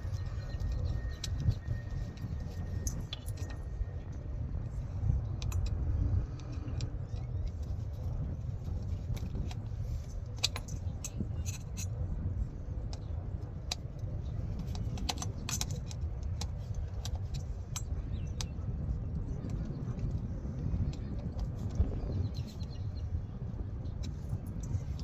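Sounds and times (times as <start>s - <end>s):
low rumble: 0.0s - 14.9s.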